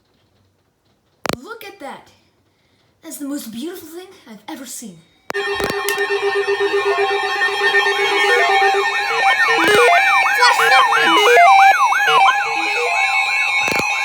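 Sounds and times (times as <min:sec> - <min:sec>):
electronic siren yelping: 0:05.4 - 0:14.0
steady high tone: 0:05.4 - 0:14.0
stepped beeping tones: 0:05.4 - 0:14.0.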